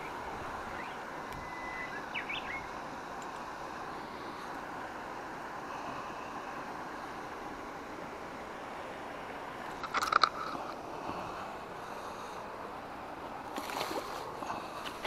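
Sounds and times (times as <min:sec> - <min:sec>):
water: 0:00.0 - 0:15.0
wind: 0:00.0 - 0:15.0
sharp clicks and rattles: 0:09.7 - 0:10.6.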